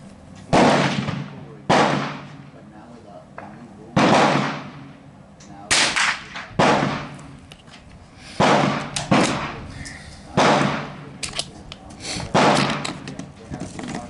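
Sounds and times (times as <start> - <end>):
rifle shots echoing: 0.5 - 2.6, 3.9 - 5.0, 5.7 - 7.2, 8.4 - 9.7, 10.3 - 11.3, 12.3 - 13.0.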